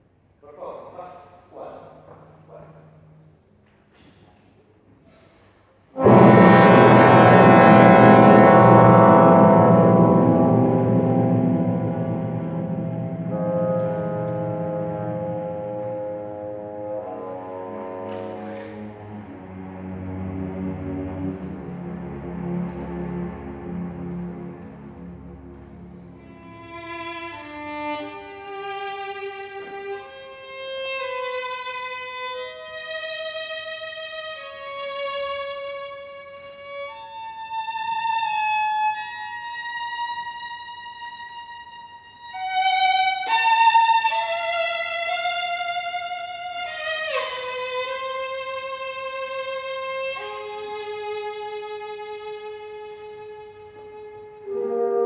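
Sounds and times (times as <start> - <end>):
violin playing with vibrato: 6.0 - 31.3.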